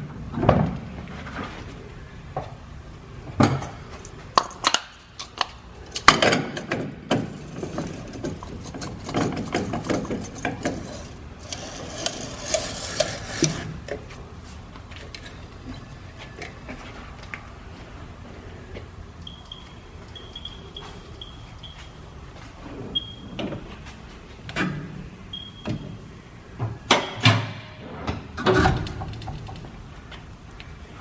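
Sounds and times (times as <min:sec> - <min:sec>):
metal tools clinking and knocking: 0:07.6 - 0:13.9.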